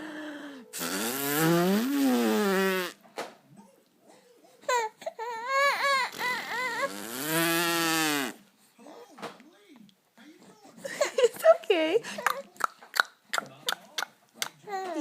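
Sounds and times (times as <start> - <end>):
baby crying: 4.1 - 8.2, 14.6 - 15.0.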